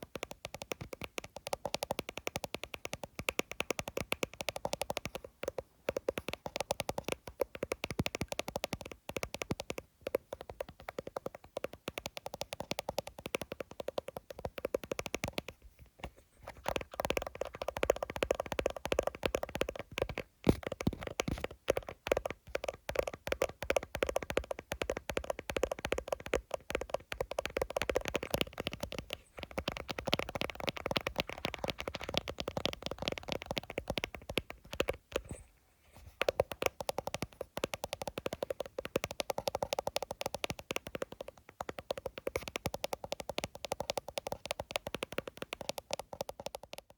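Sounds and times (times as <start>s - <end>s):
fingers tapping on a phone: 0.0s - 46.9s.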